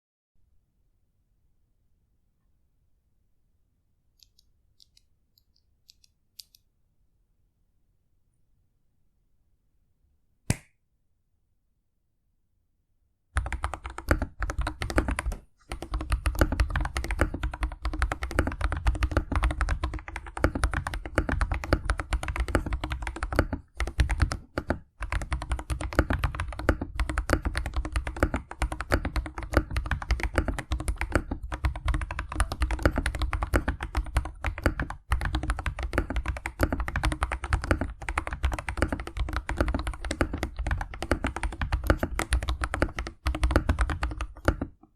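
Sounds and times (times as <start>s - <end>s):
fast typing on mechanical keyboard: 13.4s - 44.8s.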